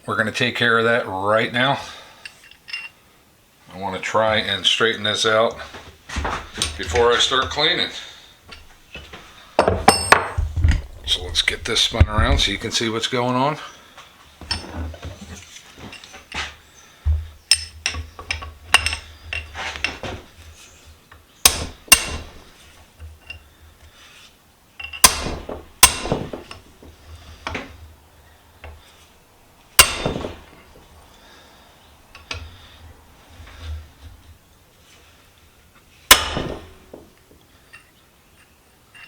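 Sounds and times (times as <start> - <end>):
light metal clinks and knocks: 2.2 - 3.0, 8.5 - 12.6, 14.4 - 16.6, 17.2 - 23.5, 24.8 - 27.9, 36.1 - 39.0
hammer striking steel: 21.5 - 22.4, 25.0 - 26.5, 29.8 - 30.6, 36.1 - 36.8.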